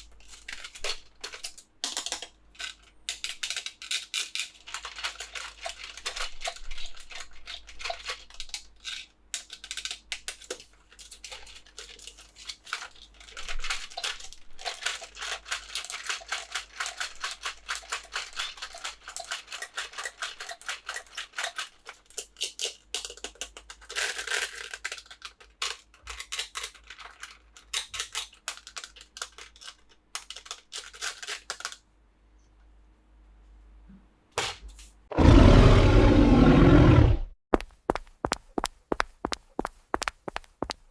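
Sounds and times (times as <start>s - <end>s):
packaging crinkling and tearing: 3.4s - 10.4s, 11.0s - 31.8s.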